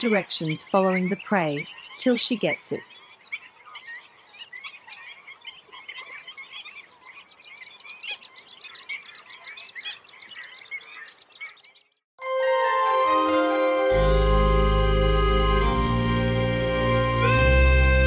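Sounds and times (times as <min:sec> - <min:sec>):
chorus of animal calls: 0:00.0 - 0:11.9
music: 0:12.2 - 0:18.0.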